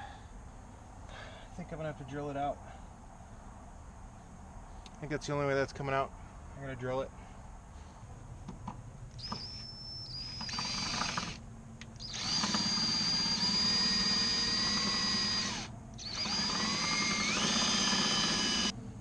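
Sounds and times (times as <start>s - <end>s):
power drill motor whining: 9.2s - 11.4s, 12.0s - 18.8s.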